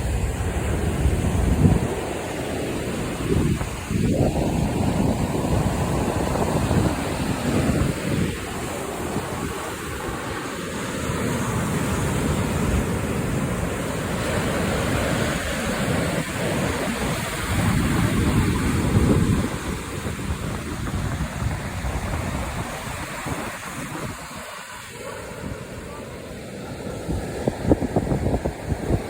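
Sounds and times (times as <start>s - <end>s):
ocean surf washing in: 0.0s - 29.0s
wind buffeting microphone: 0.0s - 29.0s.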